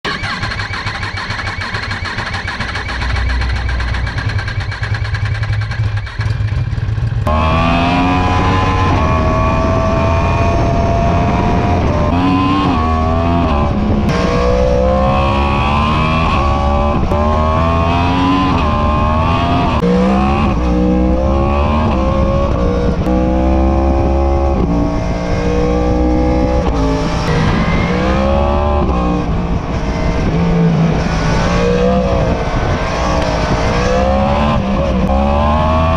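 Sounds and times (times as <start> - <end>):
motorcycle engine idling: 0.2 - 7.3
motorcycle accelerating through gears: 0.2 - 35.9.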